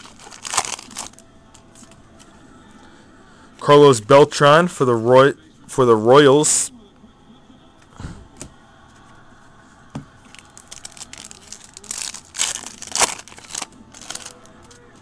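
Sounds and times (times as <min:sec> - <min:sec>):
foil wrapper crinkling: 0:00.0 - 0:01.2, 0:10.3 - 0:14.8
cards rustling: 0:00.0 - 0:02.3, 0:10.2 - 0:15.0.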